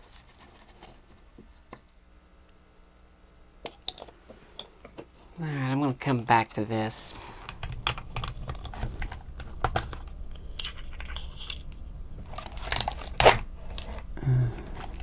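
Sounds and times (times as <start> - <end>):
plastic parts clicking and tapping: 7.5 - 15.0.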